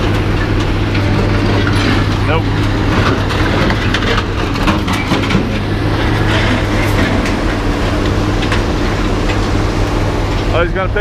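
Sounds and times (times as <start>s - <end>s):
metal clanks and rattles: 0.0s - 10.9s
engine running: 0.0s - 11.0s.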